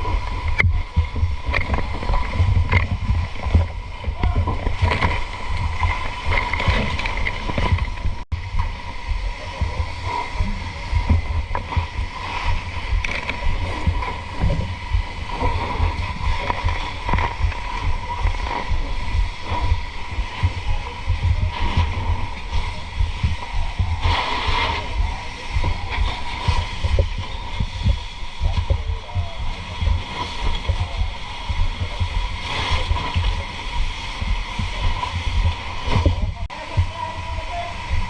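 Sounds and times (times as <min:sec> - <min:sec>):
wind buffeting microphone: 0:00.0 - 0:38.0
voices: 0:03.9 - 0:05.3, 0:09.1 - 0:38.0.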